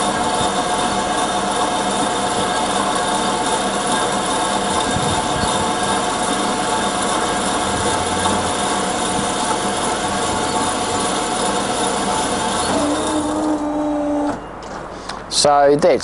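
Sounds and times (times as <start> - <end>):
bandsaw cutting: 2.7 - 13.8.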